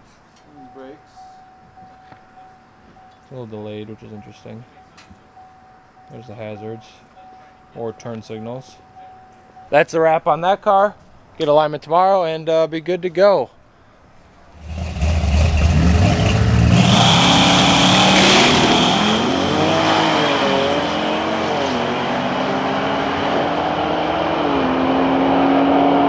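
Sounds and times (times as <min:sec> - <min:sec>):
car engine revving: 0:14.5 - 0:26.0.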